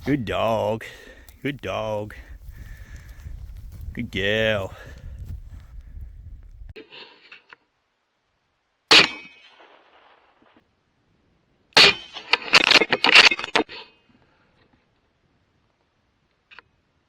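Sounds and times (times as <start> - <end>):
rifle shot: 8.9 - 10.4.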